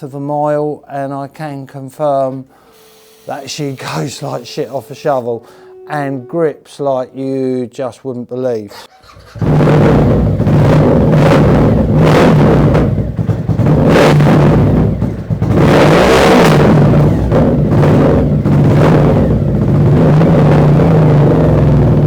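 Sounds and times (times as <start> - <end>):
motorcycle engine running loud: 9.4 - 22.0.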